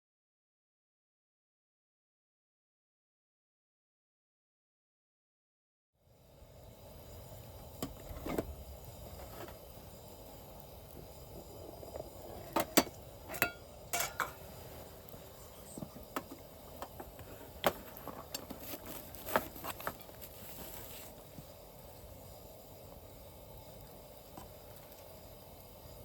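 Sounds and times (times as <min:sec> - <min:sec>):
utensils clinking against dishes: 0:12.6 - 0:14.4.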